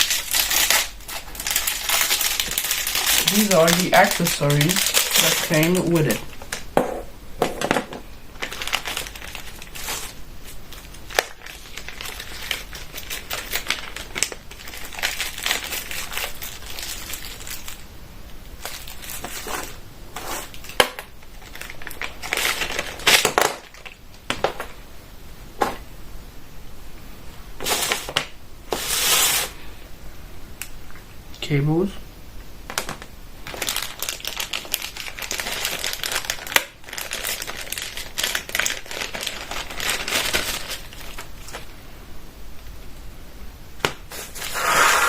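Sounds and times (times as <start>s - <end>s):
plastic packaging crinkling: 0.0s - 6.7s, 8.3s - 24.7s, 32.7s - 41.7s.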